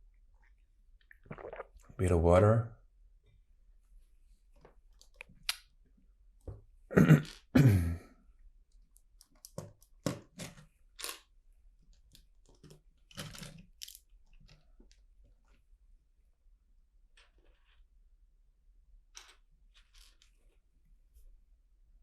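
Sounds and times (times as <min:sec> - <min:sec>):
person swallowing gulps: 0:01.0 - 0:02.0.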